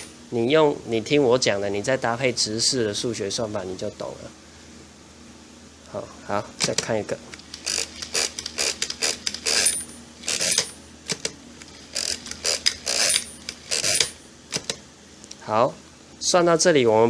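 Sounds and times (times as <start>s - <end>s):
mechanical calculator crank clatter: 7.4s - 14.8s.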